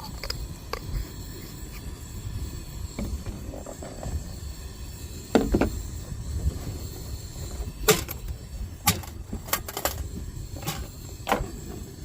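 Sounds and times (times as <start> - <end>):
coffee grinder clicks and rattling: 0.0 - 1.0
wind rumbling on microphone: 0.0 - 12.0.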